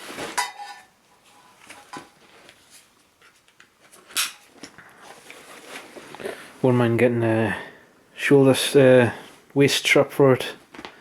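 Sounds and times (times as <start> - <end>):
rucksack fabric rustling: 0.0 - 6.6.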